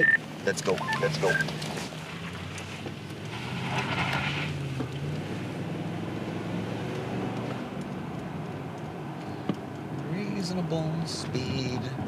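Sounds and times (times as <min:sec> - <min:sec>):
car engine running: 0:00.0 - 0:06.1.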